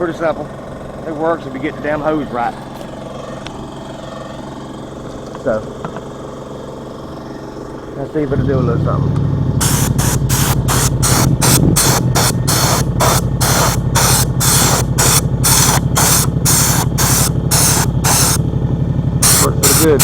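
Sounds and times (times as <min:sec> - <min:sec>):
steady engine hum: 0:00.0 - 0:20.0
spray gun hissing in pulses: 0:09.6 - 0:18.4, 0:19.2 - 0:20.0.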